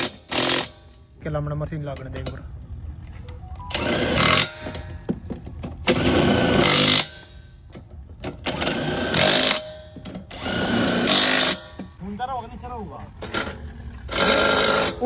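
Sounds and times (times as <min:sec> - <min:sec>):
pneumatic impact wrench: 0:00.0 - 0:01.1, 0:03.7 - 0:11.9, 0:13.2 - 0:15.0.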